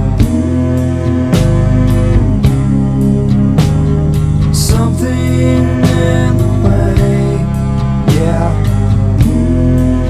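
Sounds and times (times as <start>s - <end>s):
rock music: 0.0s - 10.0s.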